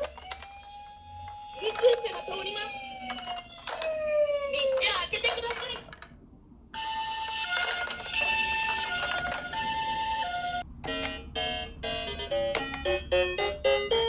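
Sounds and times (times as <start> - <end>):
toy electronic two-tone siren: 0.0 - 4.0, 6.8 - 14.0.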